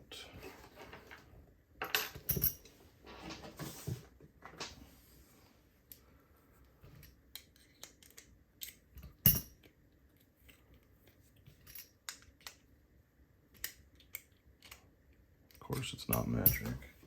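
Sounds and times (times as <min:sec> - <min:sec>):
metal tools clicking and clinking: 0:07.9 - 0:09.6, 0:16.1 - 0:16.8.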